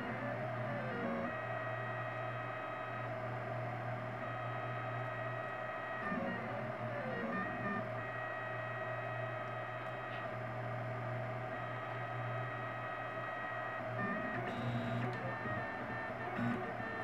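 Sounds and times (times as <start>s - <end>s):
constant low hum: 0.0s - 17.0s
stepper motors whining: 11.0s - 17.0s.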